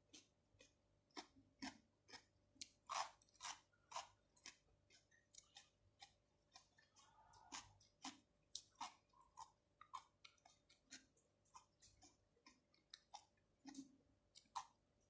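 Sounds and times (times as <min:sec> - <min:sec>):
wet chewing mouth clicks: 0:00.1 - 0:14.8.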